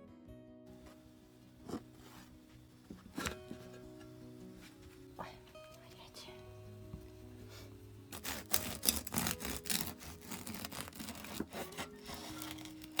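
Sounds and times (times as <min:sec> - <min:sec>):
bread knife sawing crusty loaf: 0:07.4 - 0:13.0.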